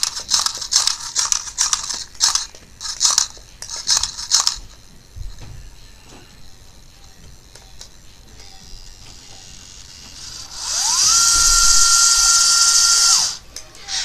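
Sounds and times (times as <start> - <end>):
small electric toy motor whirring: 0.0 - 4.8, 8.4 - 14.0.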